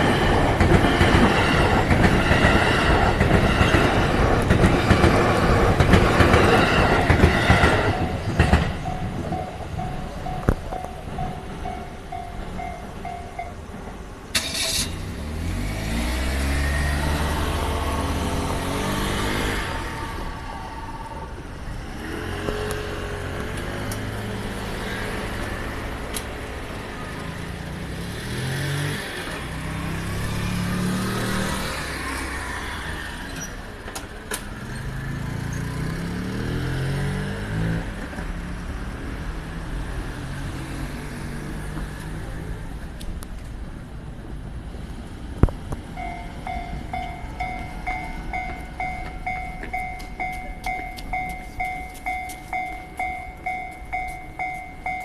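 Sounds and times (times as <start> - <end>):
level crossing warning bell ringing: 7.0 - 14.8, 45.9 - 55.0
vehicle engines accelerating: 13.6 - 33.8, 34.4 - 55.0.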